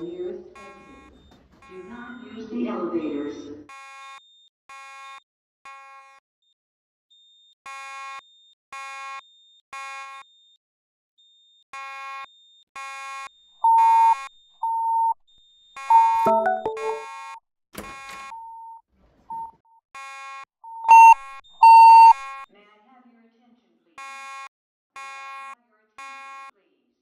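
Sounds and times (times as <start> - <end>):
fire alarm beeping: 0.5 - 2.5, 13.6 - 14.2, 15.9 - 17.0, 20.7 - 22.2
louder pure alarm beep: 0.6 - 2.2, 13.6 - 15.1, 15.9 - 17.1, 20.7 - 22.2.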